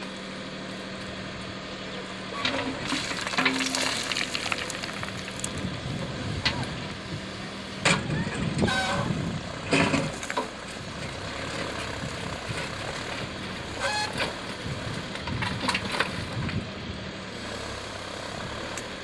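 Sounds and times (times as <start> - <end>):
tractor diesel engine running: 0.0 - 19.0.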